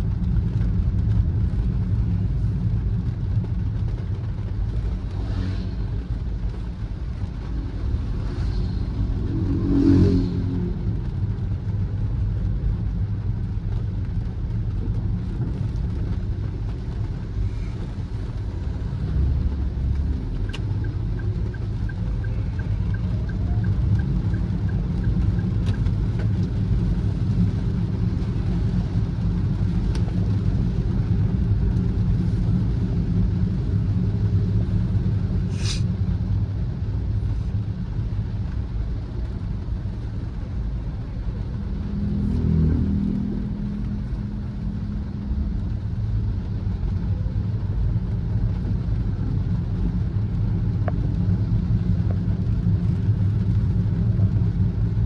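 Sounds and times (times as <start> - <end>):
car driving on wet road: 0.0 - 55.0
short hiss: 35.5 - 35.8.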